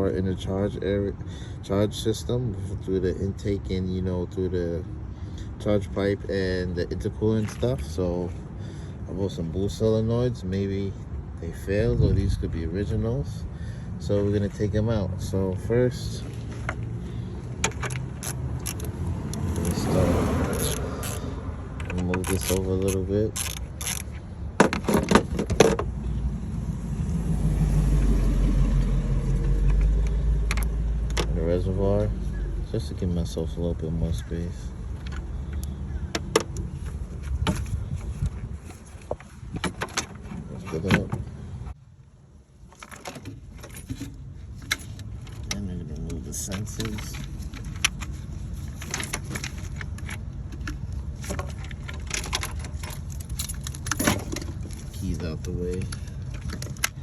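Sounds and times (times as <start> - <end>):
steady low rumble: 11.4 - 17.6
parts clicking and rattling: 16.1 - 26.2, 34.8 - 41.3, 42.6 - 57.0.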